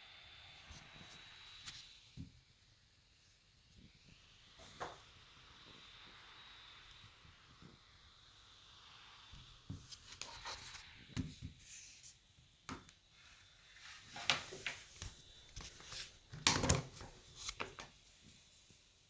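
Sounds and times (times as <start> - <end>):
high-pitched fan whine: 0.0 - 12.5
laptop handling knocks and clicks: 16.4 - 17.9.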